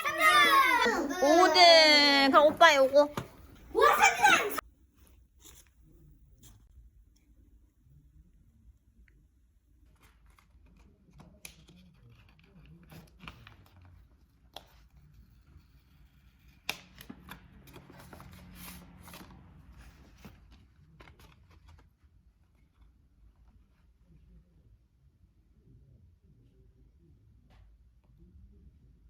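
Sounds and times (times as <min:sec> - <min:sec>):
paper rustling and crinkling: 0:16.8 - 0:22.8.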